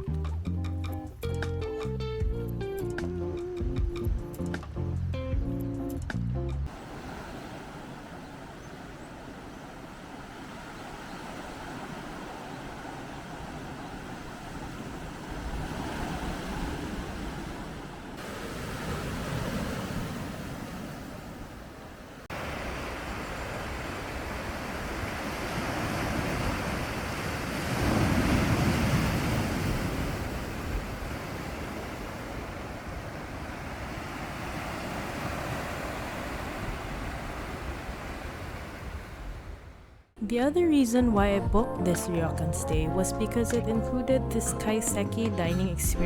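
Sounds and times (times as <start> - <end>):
rushing water: 6.7 - 39.5.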